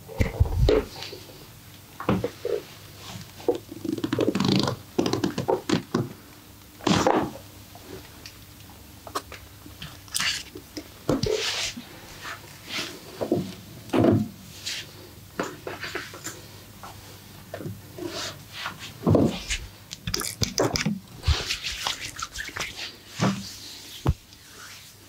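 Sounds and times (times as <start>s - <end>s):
rubbing on skin: 21.2s - 25.0s.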